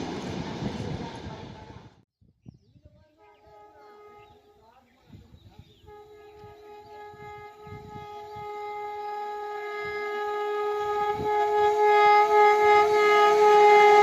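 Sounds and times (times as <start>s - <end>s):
train rumbling on track: 0.0s - 2.0s, 5.9s - 14.0s
train horn long note: 3.2s - 4.8s, 5.8s - 14.0s.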